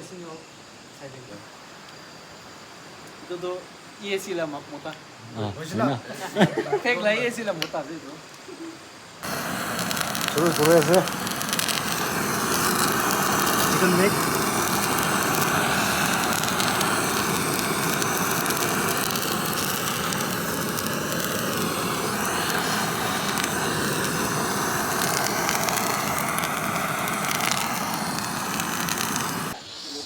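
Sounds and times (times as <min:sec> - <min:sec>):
cooking fire crackling: 0:09.2 - 0:30.0.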